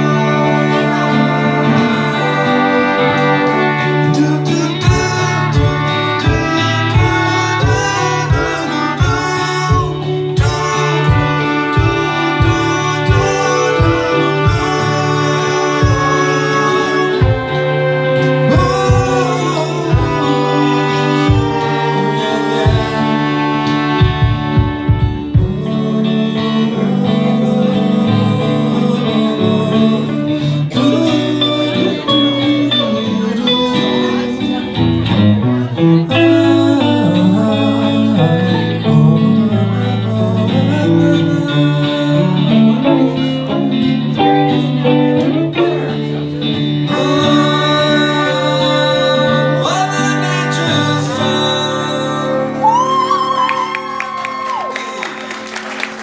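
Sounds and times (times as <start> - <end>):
guitars playing: 0.0 - 56.0
person singing: 0.0 - 56.0.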